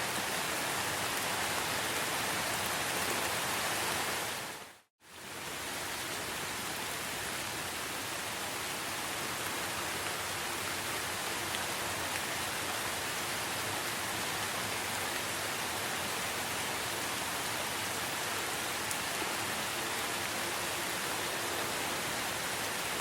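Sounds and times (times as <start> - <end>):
steady rain hiss: 0.0 - 23.0.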